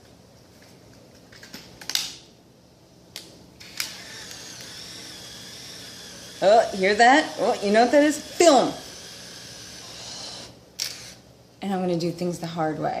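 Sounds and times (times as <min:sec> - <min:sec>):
camera motor winding film: 0:03.6 - 0:06.4, 0:08.8 - 0:11.2.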